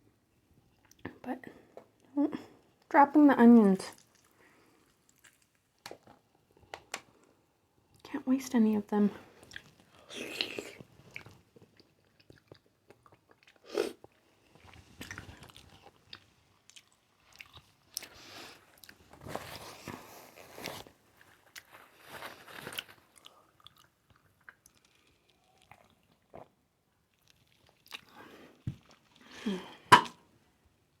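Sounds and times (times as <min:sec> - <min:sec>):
close chewing and biting: 0:04.0 - 0:06.2, 0:09.4 - 0:26.5.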